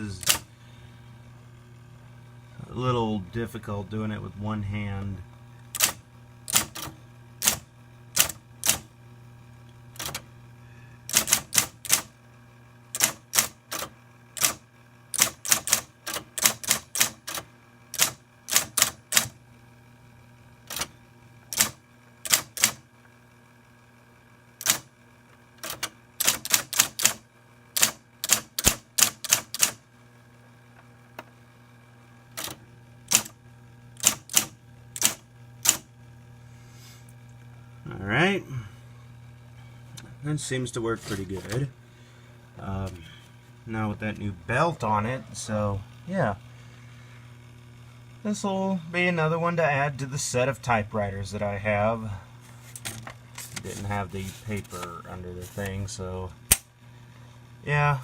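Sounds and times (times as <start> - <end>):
typewriter motor humming: 0.0 - 0.5, 5.0 - 9.0, 9.7 - 10.4, 11.0 - 12.2, 12.8 - 19.4, 20.5 - 22.9, 24.5 - 29.9, 32.3 - 35.9, 52.6 - 56.7
typewriter key strikes: 0.2 - 0.4, 5.8 - 7.6, 8.2 - 8.9, 10.0 - 10.2, 11.1 - 12.1, 13.0 - 14.6, 15.2 - 17.4, 18.0 - 19.4, 20.7 - 20.9, 21.5 - 22.8, 24.6 - 24.9, 25.6 - 27.2, 27.8 - 29.8, 32.4 - 33.4, 34.0 - 35.8.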